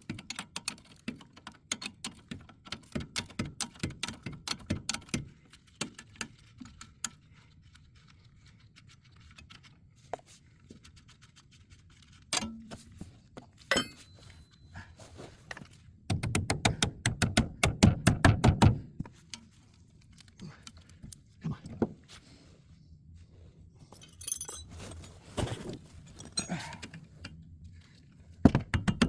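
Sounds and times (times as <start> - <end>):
sharp metal knocks: 13.7 - 14.2.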